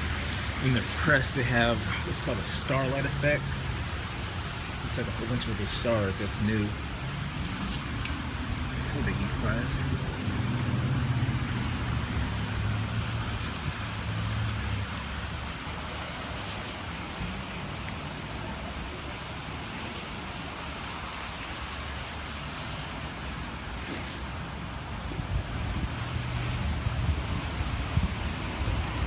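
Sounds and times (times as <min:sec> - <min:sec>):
steady rain hiss: 0:00.0 - 0:29.0
wind buffeting microphone: 0:23.5 - 0:29.0.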